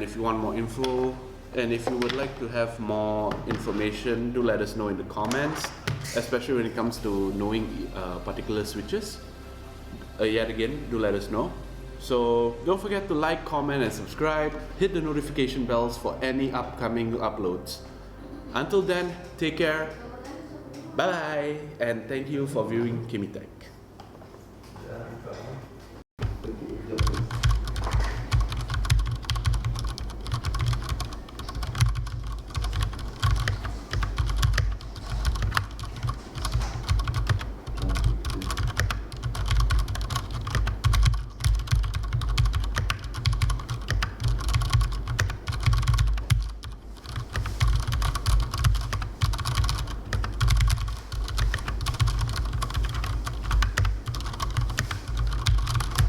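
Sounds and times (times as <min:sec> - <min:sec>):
mechanical keyboard typing: 0:26.9 - 0:56.0.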